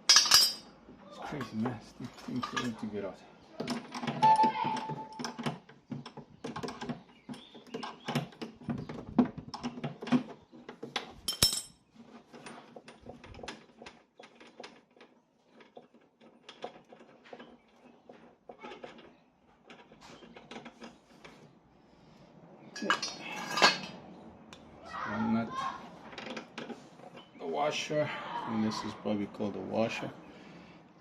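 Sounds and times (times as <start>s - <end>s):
hand tools and metal parts clinking: 0.0s - 21.4s, 22.7s - 24.0s.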